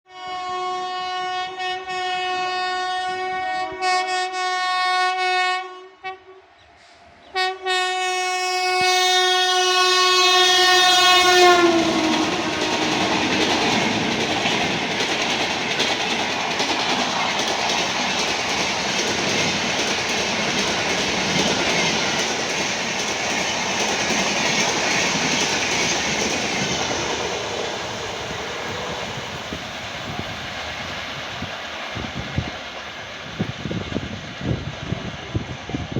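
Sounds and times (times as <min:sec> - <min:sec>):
locomotive horn blasts: 0:00.1 - 0:06.4, 0:07.4 - 0:13.0
train wheels on rails: 0:08.8 - 0:35.9.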